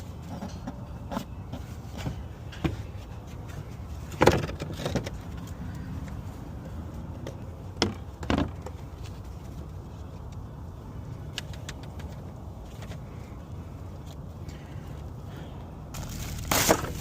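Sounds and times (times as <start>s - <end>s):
steady low rumble: 8.8s - 17.0s.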